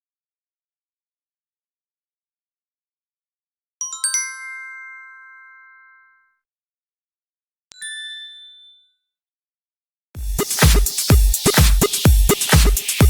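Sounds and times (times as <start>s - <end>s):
bright bell-like ding tones: 7.7s - 9.1s.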